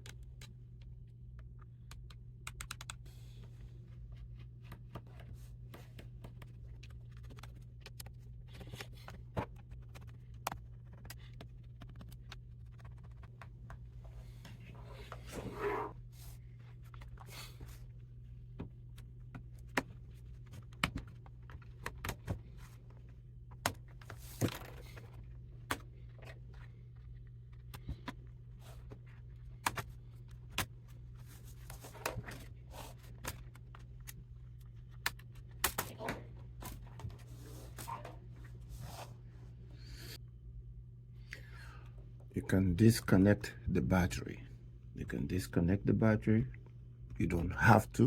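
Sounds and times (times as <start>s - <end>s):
steady low hum: 0.0s - 48.0s.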